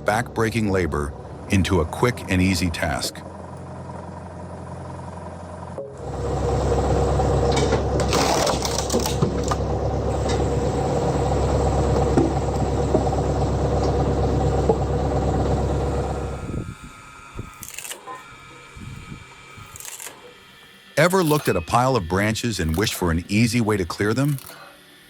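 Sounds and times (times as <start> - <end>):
hydraulic log splitter running: 0.0 - 25.0
wood cracking: 8.0 - 9.6, 23.9 - 24.6
scattered clicks: 23.9 - 24.6.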